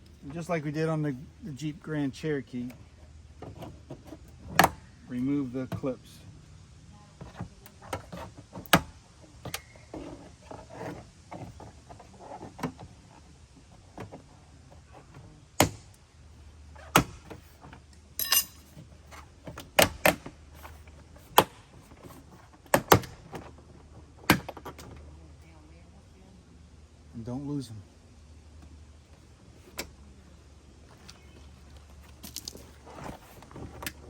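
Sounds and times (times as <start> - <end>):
short ringing rattle: 18.2 - 18.7.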